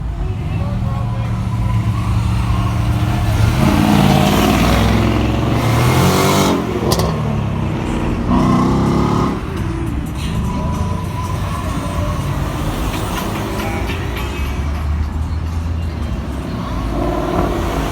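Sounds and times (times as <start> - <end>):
car engine revving: 0.0 - 17.9
exhaust backfire pop: 6.4 - 7.5.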